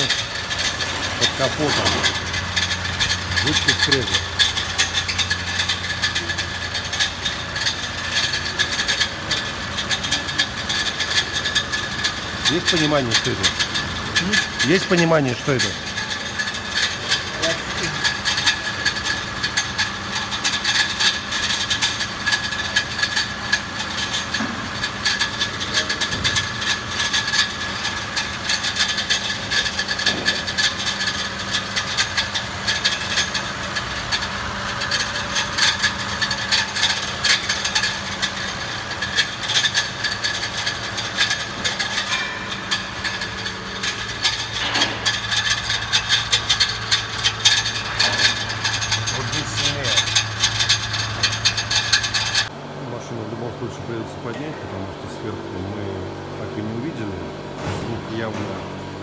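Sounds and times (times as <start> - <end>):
metallic grinding rattle: 0.0 - 52.6.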